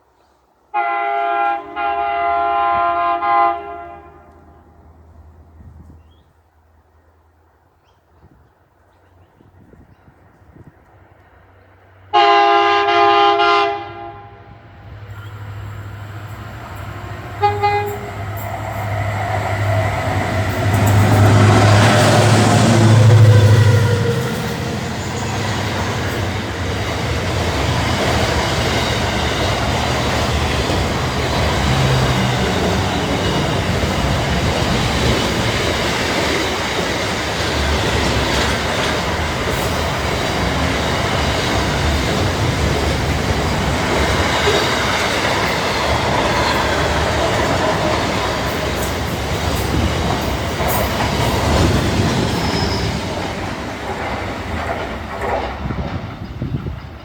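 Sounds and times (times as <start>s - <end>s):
train wagons clattering over rail joints: 24.3s - 57.0s
faint high wheel squeal: 52.2s - 53.1s.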